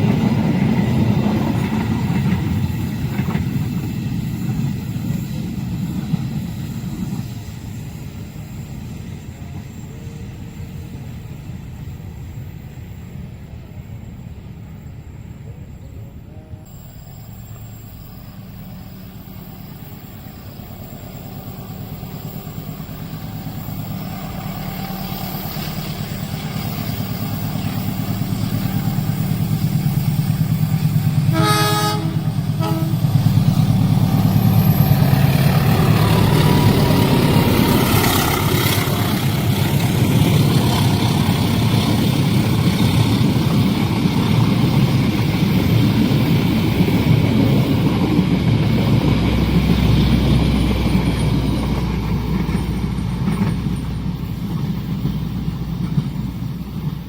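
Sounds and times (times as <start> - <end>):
train rumbling on rails: 0.0 - 57.0
train horn blasts: 31.2 - 33.5.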